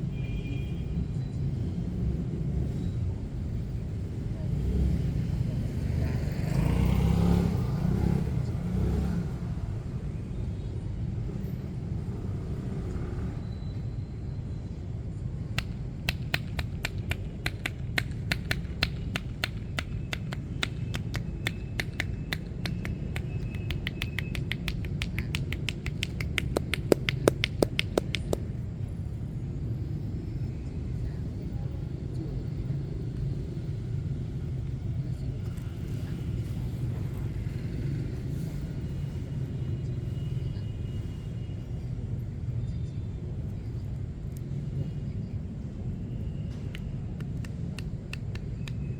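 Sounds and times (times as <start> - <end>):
low rumble of street traffic: 0.0 - 48.9
hands slapping on body: 15.6 - 28.4.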